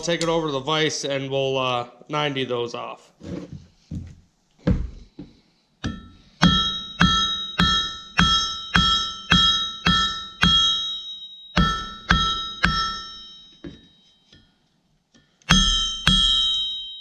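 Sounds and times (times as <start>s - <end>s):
hammer blows on anvil ringing: 5.8s - 14.5s, 15.5s - 17.0s.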